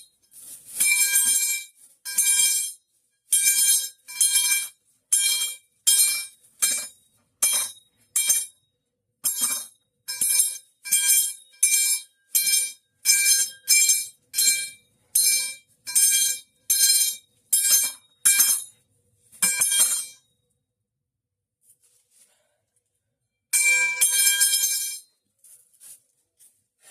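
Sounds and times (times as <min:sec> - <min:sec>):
metal pipe clanging: 0:00.7 - 0:08.5, 0:09.2 - 0:18.8, 0:19.4 - 0:20.2, 0:23.5 - 0:25.1.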